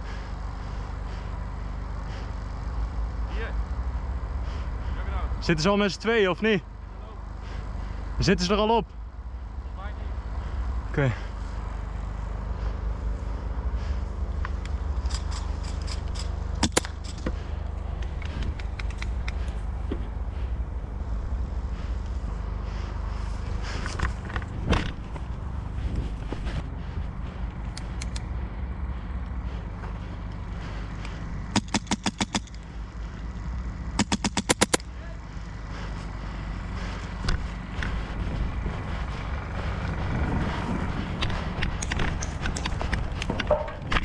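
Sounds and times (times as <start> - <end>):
steady low rumble: 0.0 - 44.0
airsoft guns firing: 31.6 - 32.6, 34.0 - 34.8
wind rumble on microphone: 37.1 - 44.0.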